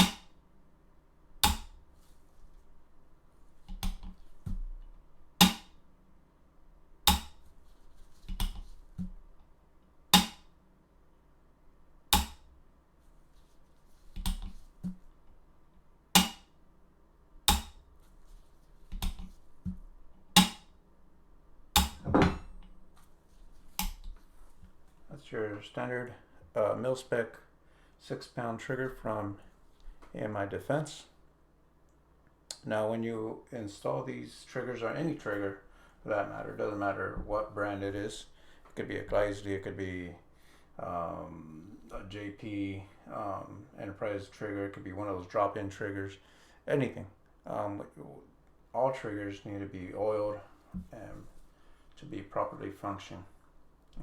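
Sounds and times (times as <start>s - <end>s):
trigger hammer snapping: 12.2s - 12.4s, 16.2s - 16.4s, 21.8s - 22.1s.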